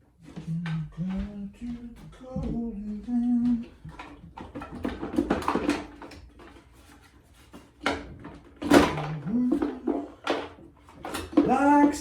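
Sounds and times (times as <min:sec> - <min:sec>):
light clattering and knocks: 0:00.2 - 0:12.0
person singing slow melody: 0:00.4 - 0:03.8, 0:09.0 - 0:10.0.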